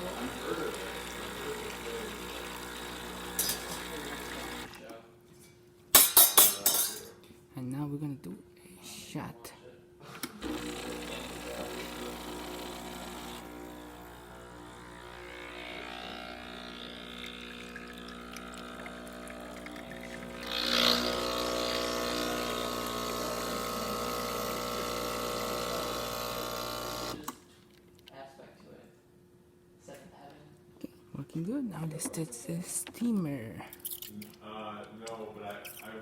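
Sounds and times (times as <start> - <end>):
espresso machine pump humming: 0.0 - 4.8, 10.4 - 27.3.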